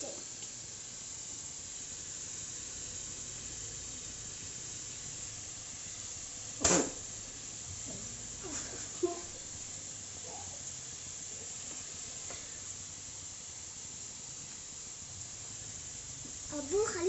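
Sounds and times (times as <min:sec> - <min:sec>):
fries sizzling in hot oil: 0:00.0 - 0:17.0.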